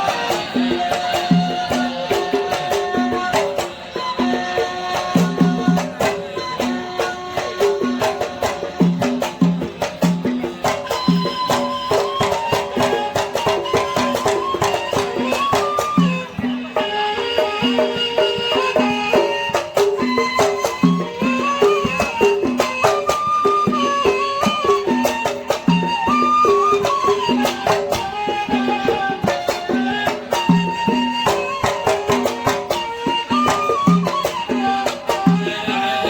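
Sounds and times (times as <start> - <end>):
hand drum strokes: 0.0 - 36.0
string instruments melody: 0.0 - 36.0.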